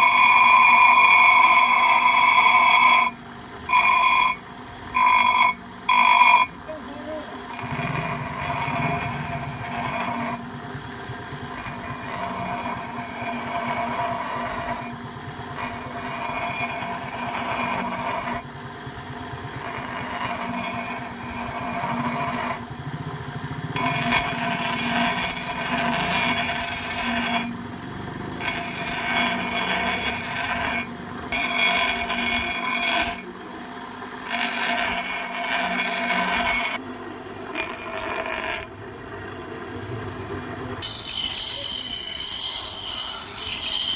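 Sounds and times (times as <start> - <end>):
shrill metal grinding on steel: 0.0 - 6.7, 7.5 - 10.4, 11.5 - 15.0, 15.6 - 18.5, 19.6 - 22.7, 23.8 - 27.6, 28.4 - 33.3, 34.2 - 36.8, 37.5 - 38.8, 40.8 - 43.9.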